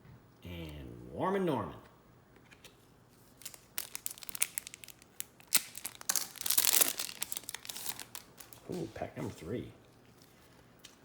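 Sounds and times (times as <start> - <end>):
wrapper crinkling: 3.2 - 9.5
wrapper tearing: 3.3 - 9.0.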